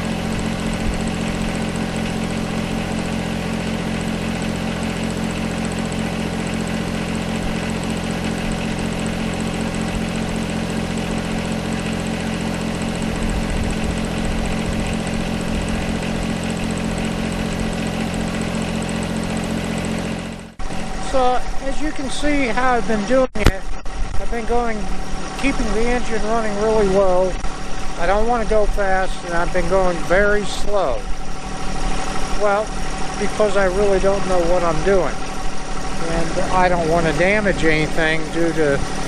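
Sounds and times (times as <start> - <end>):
tractor diesel engine running: 0.0 - 39.0.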